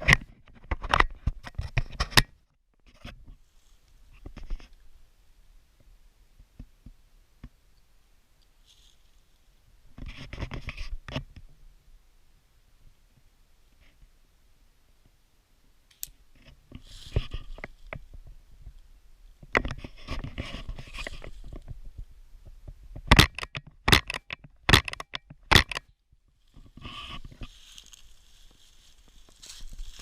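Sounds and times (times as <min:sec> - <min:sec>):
rustling movement: 0:02.9 - 0:04.8, 0:08.6 - 0:10.8, 0:16.4 - 0:18.9, 0:19.5 - 0:22.1, 0:25.7 - 0:30.0.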